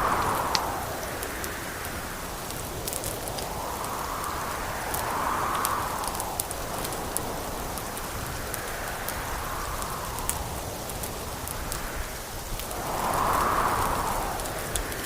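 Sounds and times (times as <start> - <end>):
wind gusting: 0.0 - 15.0
wood fire crackling and popping: 0.0 - 15.0.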